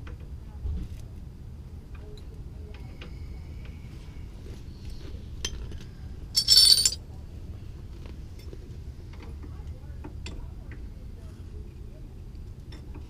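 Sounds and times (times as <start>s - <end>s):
metal tools clinking: 6.4s - 7.0s
ringing metallic jangle: 6.4s - 7.0s.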